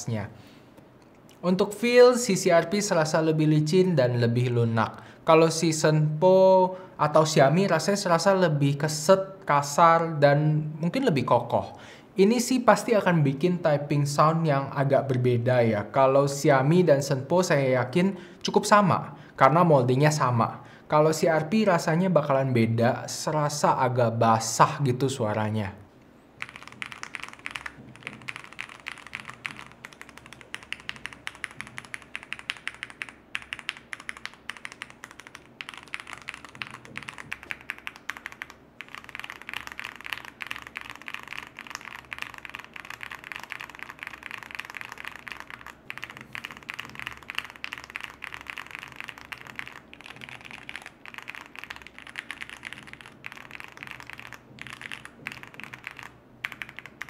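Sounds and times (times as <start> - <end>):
mechanical keyboard typing: 26.4 - 57.0.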